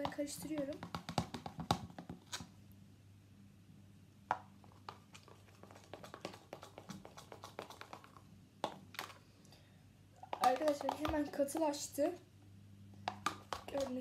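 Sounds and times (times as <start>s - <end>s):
slime stirred in a bowl: 0.0s - 2.5s, 4.4s - 9.2s, 10.2s - 12.2s, 13.0s - 14.0s.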